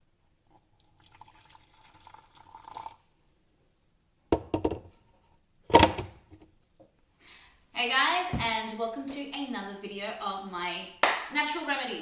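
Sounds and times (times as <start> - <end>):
liquid pouring: 0.5 - 3.2.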